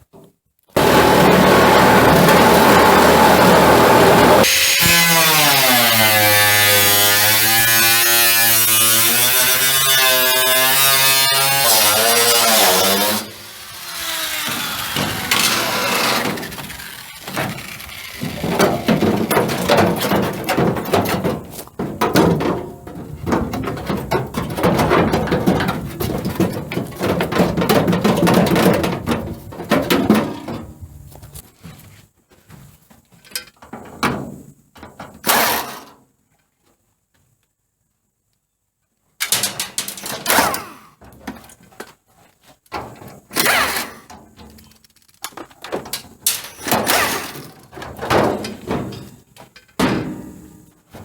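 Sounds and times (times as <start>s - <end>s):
power tool motor running: 0.8s - 6.4s, 10.3s - 18.9s.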